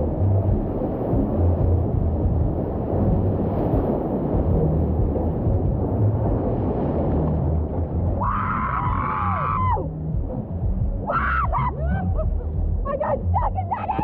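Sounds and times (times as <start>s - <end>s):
whitewater rushing: 0.0s - 14.0s
wind on microphone: 0.0s - 14.0s
person whooping and yelling: 8.2s - 9.9s, 11.0s - 12.4s.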